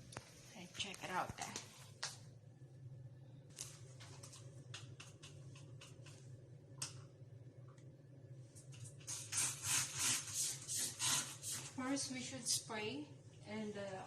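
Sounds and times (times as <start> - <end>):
steady low hum: 0.0 - 14.0
spray bottle hissing: 9.1 - 11.7.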